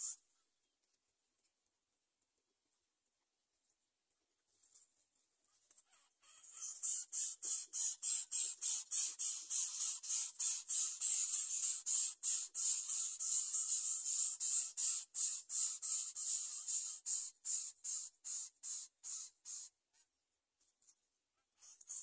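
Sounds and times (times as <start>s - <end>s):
nestlings raspy begging calls: 5.9s - 19.8s, 21.6s - 22.0s.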